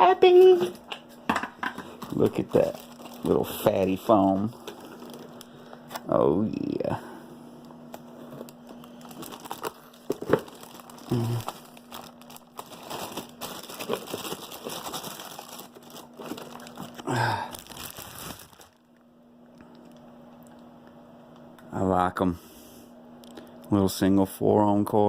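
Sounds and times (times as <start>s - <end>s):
packaging crinkling and rustling: 1.8s - 6.2s, 8.0s - 19.0s.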